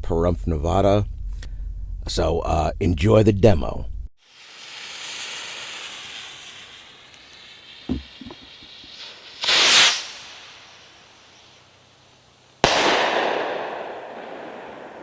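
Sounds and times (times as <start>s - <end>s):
firework rocket launching hiss: 4.2s - 15.0s
sharp hissing burst: 4.2s - 15.0s
dull pop: 7.9s - 8.5s.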